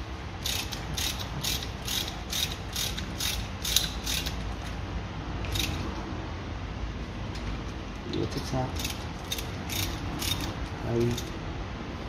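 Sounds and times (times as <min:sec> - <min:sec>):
ratchet wrench clicking: 0:00.4 - 0:04.7, 0:05.4 - 0:05.8, 0:08.7 - 0:11.4.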